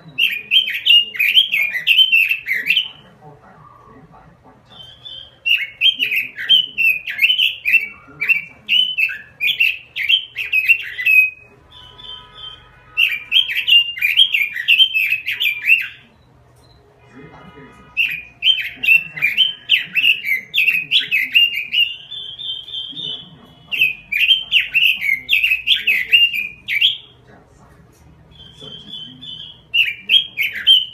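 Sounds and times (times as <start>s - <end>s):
bird warbling whistled song: 0.0s - 3.1s, 4.7s - 16.8s, 18.0s - 27.2s, 28.3s - 30.9s
short high bird trill: 4.8s - 16.0s.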